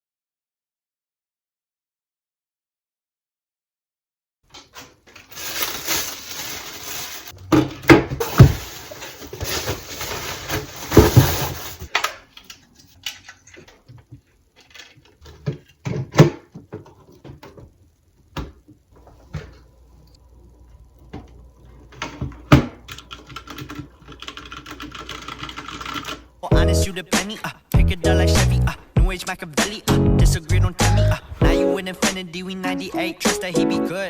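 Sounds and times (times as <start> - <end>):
packaging rustling: 4.7 - 7.4, 8.2 - 13.9.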